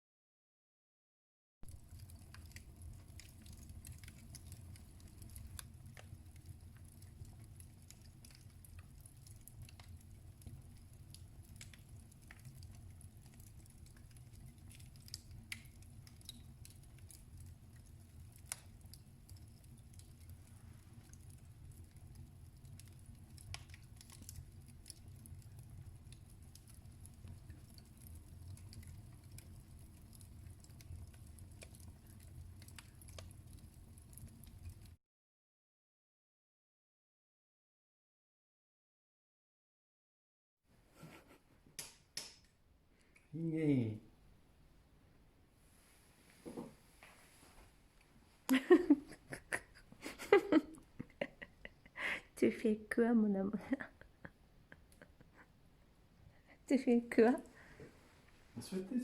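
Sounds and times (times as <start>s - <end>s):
wood fire crackling: 1.6s - 35.0s, 40.9s - 59.0s.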